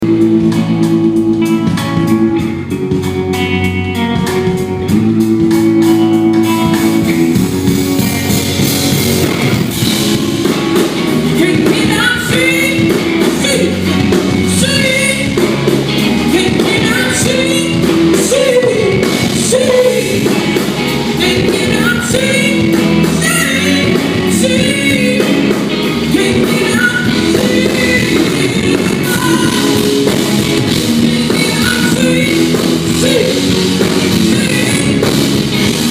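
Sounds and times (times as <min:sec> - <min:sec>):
live band playing: 0:00.0 - 0:35.9
woman singing lead: 0:10.8 - 0:35.9.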